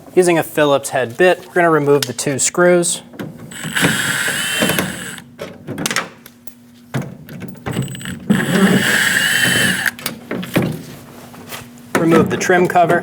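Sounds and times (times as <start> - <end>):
cordless drill motor whine: 3.5 - 5.3, 7.7 - 10.0.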